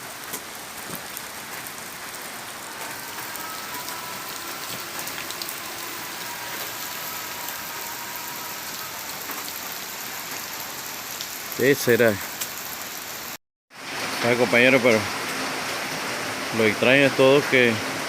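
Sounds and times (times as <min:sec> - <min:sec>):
steady rain falling: 0:00.0 - 0:18.0
faint thin high tone: 0:02.7 - 0:09.5.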